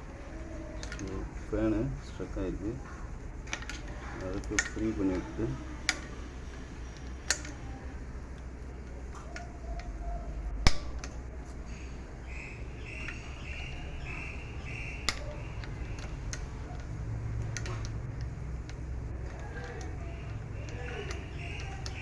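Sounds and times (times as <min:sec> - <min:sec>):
clicks and knocks on pump motor: 0:10.6 - 0:11.6, 0:14.9 - 0:22.0.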